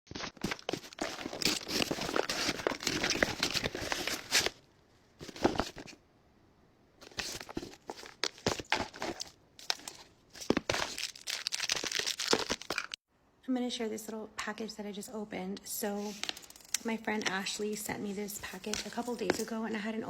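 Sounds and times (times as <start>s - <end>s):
packaging crinkling and rustling: 0.1s - 4.6s, 5.2s - 6.0s, 7.0s - 13.0s
packaging tearing: 0.2s - 4.6s, 7.1s - 13.0s.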